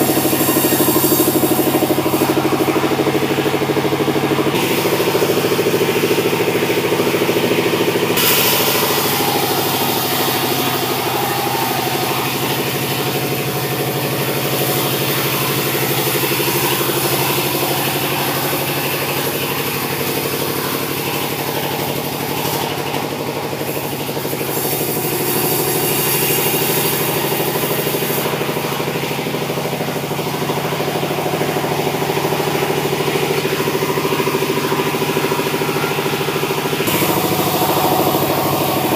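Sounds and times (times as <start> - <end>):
machinery engine droning: 0.0 - 38.9
saw hissing through wood: 8.2 - 22.6, 36.8 - 38.9.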